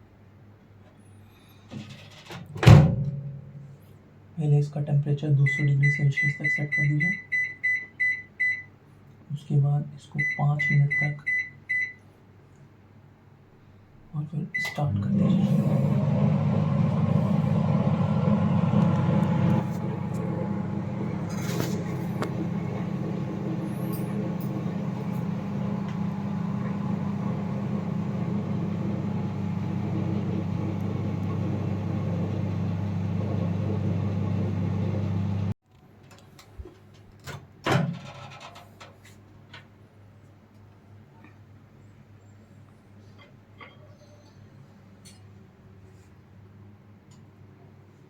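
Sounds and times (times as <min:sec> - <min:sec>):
microwave oven humming: 0:14.6 - 0:35.6.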